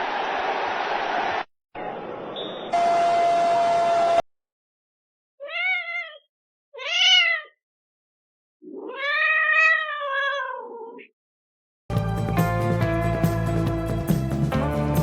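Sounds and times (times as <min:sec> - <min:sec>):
cat meowing: 0:05.4 - 0:07.6, 0:08.6 - 0:11.1.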